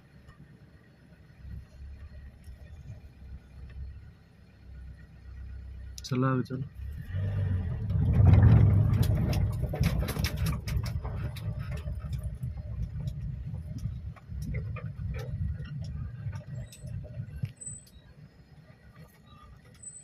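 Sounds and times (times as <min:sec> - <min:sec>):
vehicle engine and wind rumble: 0:00.0 - 0:20.0
knocks and rattles: 0:07.6 - 0:17.9.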